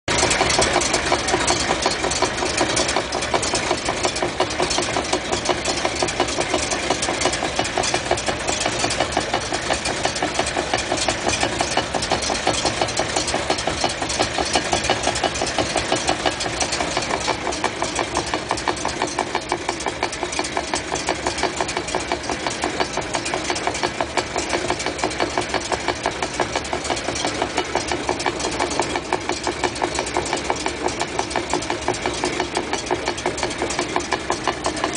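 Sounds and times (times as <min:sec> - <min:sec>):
rhythmic drivetrain pulsing: 0:00.1 - 0:34.9.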